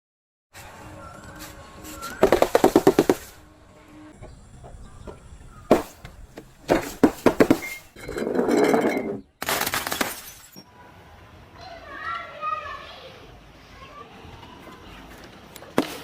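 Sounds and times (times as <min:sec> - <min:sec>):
grinding crunch: 0:02.2 - 0:03.4, 0:04.1 - 0:10.5.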